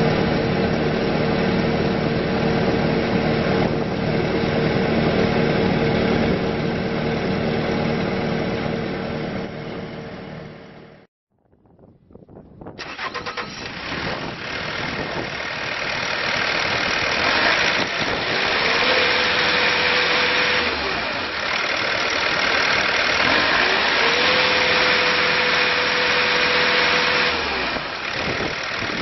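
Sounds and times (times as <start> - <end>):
diesel engine running: 0.0 - 11.1, 12.8 - 29.0
engine cranking and starting: 12.8 - 19.4.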